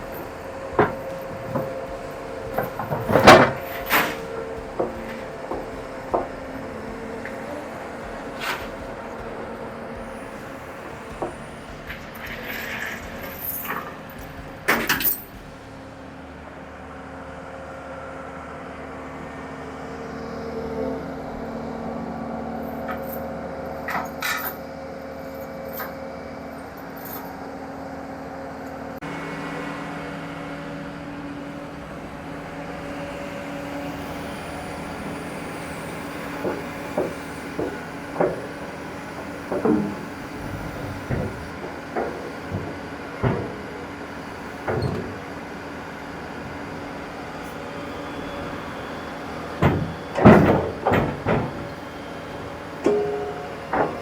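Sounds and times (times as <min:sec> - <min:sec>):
sharp metal clanks: 0:00.0 - 0:15.9, 0:52.8 - 0:54.0
diesel engine running under load: 0:00.0 - 0:23.8, 0:29.0 - 0:54.0.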